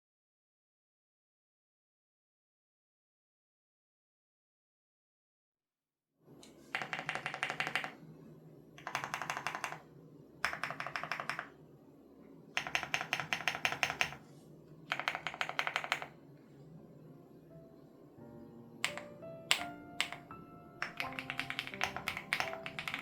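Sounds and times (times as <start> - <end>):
mechanical keyboard typing: 6.7 - 8.0, 8.8 - 11.5, 12.6 - 14.2, 14.9 - 16.2, 18.8 - 23.0.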